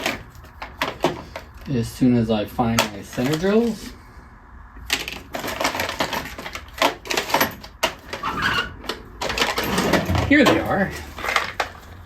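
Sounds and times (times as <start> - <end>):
tools clattering while rummaging: 0.0 - 1.8, 2.8 - 3.9, 4.8 - 12.0.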